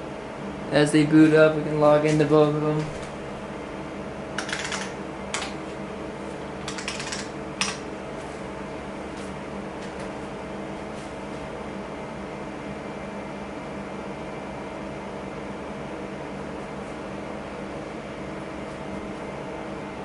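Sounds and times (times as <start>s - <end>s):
computer fans humming: 0.0s - 20.0s
computer keyboard typing: 4.4s - 5.4s, 6.6s - 7.8s.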